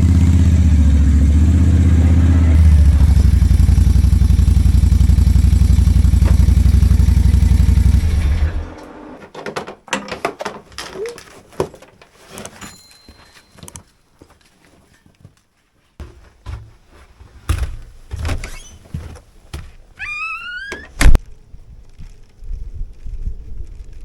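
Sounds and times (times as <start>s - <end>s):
small engine idling: 0.0s - 8.8s.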